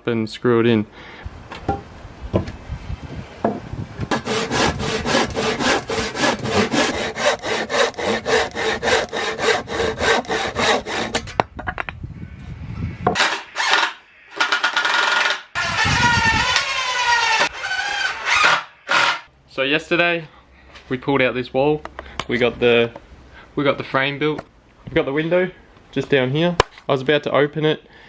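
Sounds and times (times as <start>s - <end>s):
hand saw cutting wood: 4.1s - 11.4s, 15.6s - 19.3s.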